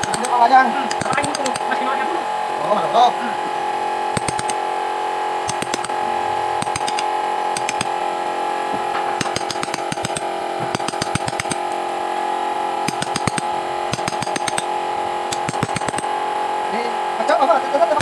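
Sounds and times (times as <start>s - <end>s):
mallet tapping chisel: 0.0s - 1.7s, 4.1s - 4.6s, 5.4s - 6.0s, 6.6s - 8.0s, 9.2s - 11.6s, 12.8s - 14.7s, 15.3s - 16.1s
steady hum: 0.0s - 18.0s.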